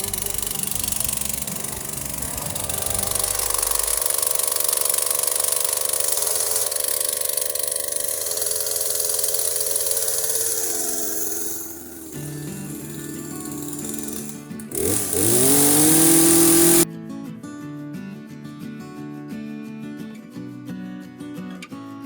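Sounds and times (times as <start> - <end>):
chainsaw cutting wood: 0.0 - 16.9.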